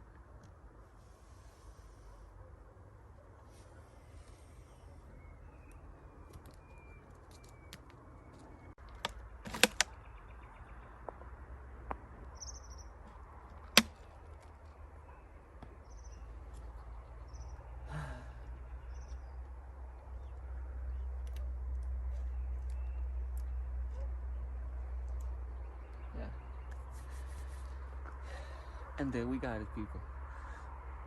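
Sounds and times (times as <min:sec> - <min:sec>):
sharp clicks and knocks: 0:08.8 - 0:10.0.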